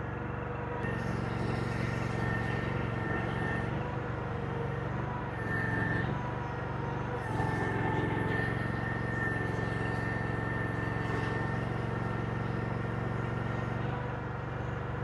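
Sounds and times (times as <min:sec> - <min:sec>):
engine running under load: 0:00.0 - 0:15.0
hydraulic whine: 0:00.0 - 0:15.0.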